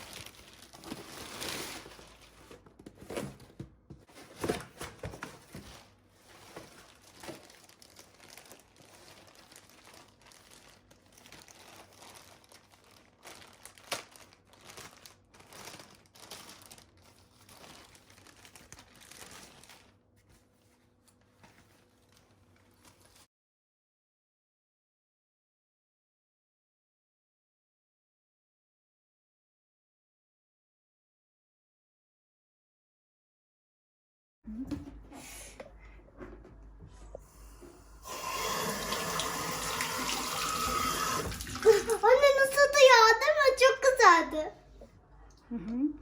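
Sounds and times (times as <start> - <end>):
packaging tearing: 0.0 - 2.4, 6.4 - 19.9
packaging crinkling and rustling: 0.0 - 23.3.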